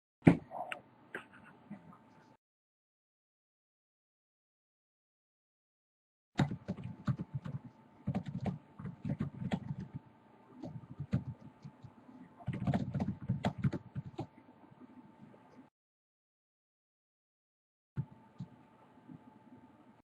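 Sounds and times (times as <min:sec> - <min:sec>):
computer keyboard typing: 0:06.4 - 0:10.0, 0:10.6 - 0:11.8, 0:12.5 - 0:14.3.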